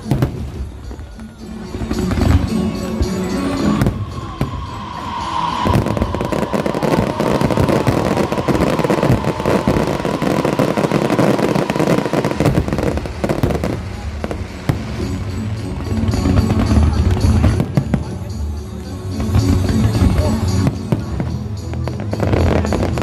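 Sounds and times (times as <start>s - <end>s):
steady whistling tone: 0.0s - 17.8s
fireworks crackling: 0.0s - 23.0s.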